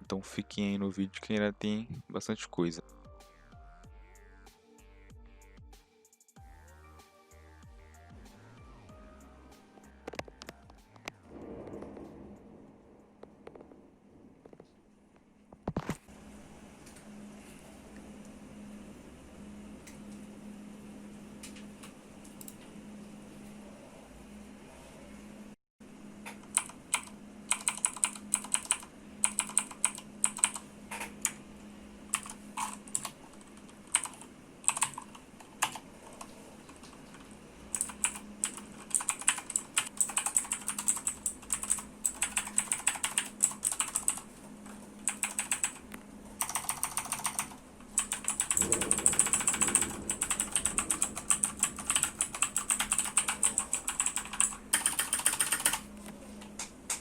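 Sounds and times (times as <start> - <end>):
clicky keyboard typing: 26.3 - 31.4, 32.1 - 44.3, 45.0 - 55.9.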